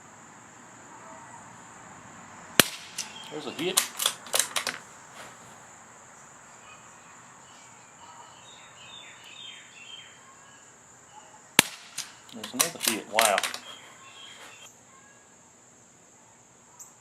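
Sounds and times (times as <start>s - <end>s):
high insect drone: 0.0s - 17.0s
suppressed rifle shot: 2.6s - 4.8s, 11.6s - 13.7s
clicks: 2.8s - 4.8s, 11.7s - 13.8s
faint bird chirps: 3.0s - 3.8s, 5.0s - 11.6s, 12.2s - 15.5s.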